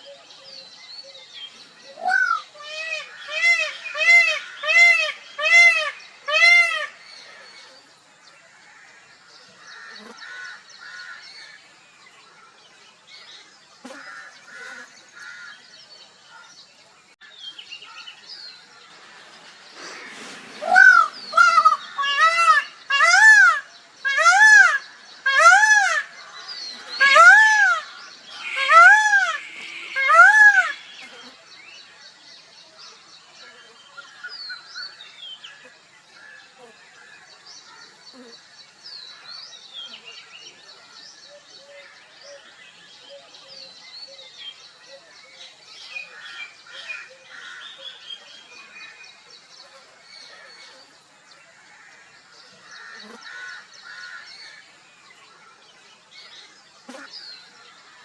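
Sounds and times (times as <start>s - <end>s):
peafowl honking calls: 19.8s - 31.4s.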